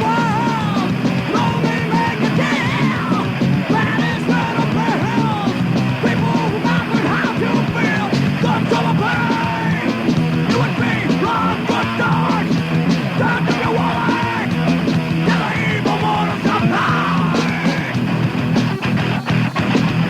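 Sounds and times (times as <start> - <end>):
shouted vocals: 0.0 - 18.0
thrash metal band playing: 0.0 - 20.0.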